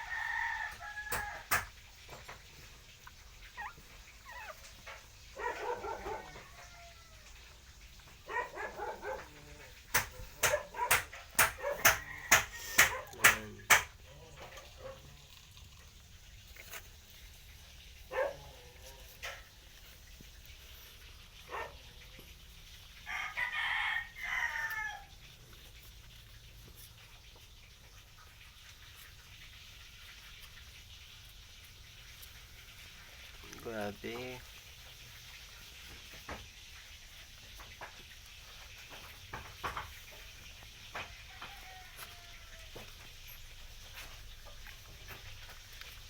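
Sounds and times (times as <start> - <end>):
drawn-out animal calls: 0.0 - 15.4.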